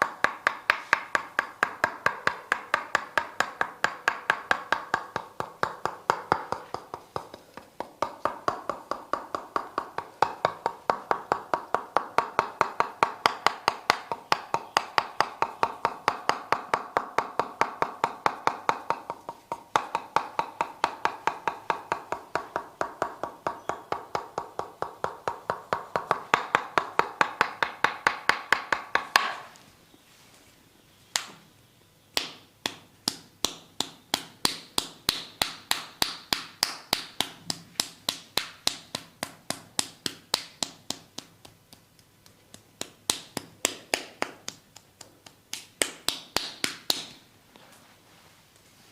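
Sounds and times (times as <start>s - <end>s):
percussive massage strikes: 0.0s - 29.6s, 32.2s - 47.2s
sharp taps: 0.0s - 29.6s.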